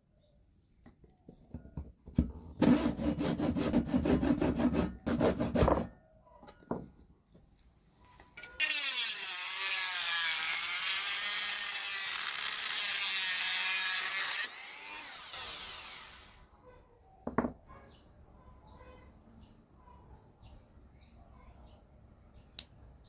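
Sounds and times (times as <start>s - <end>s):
small power tool running: 8.6s - 16.4s
single knock: 17.3s - 17.6s.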